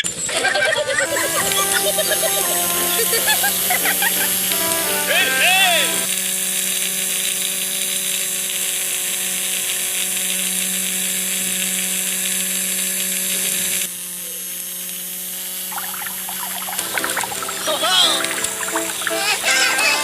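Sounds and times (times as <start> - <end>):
small electric motor whirring: 1.1 - 17.5.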